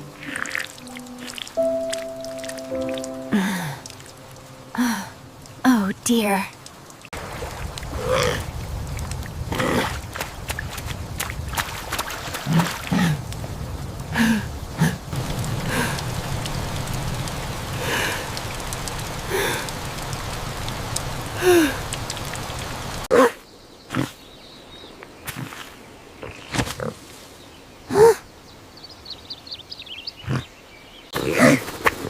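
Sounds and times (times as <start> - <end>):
steady background hiss: 0.0 - 7.5.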